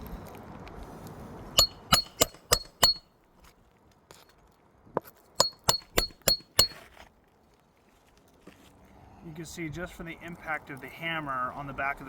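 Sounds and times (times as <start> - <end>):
hammer striking metal tool: 1.6 - 3.0, 5.4 - 6.8.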